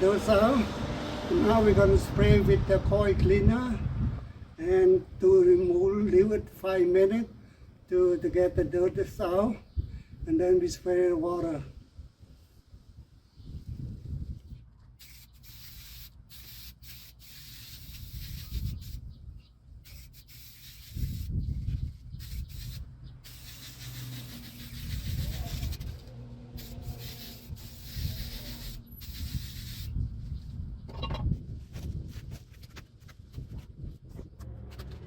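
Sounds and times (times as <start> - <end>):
hissing spray: 15.0 - 19.0, 19.8 - 21.4, 22.2 - 30.0.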